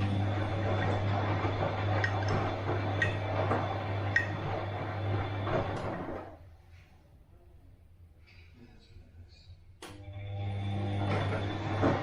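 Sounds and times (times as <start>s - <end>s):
washing machine drum churning: 0.0s - 6.4s, 10.6s - 12.0s
washing machine clicks: 0.5s - 6.0s.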